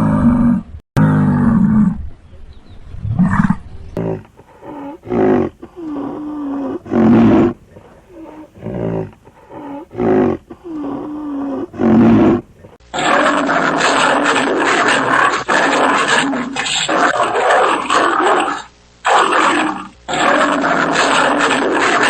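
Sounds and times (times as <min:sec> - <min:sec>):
animal moaning calls: 0:03.2 - 0:12.4.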